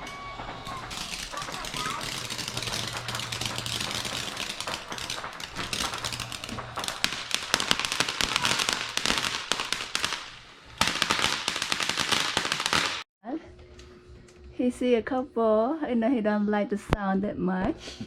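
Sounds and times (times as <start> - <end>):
ground firework crackling and popping: 0.0 - 13.1.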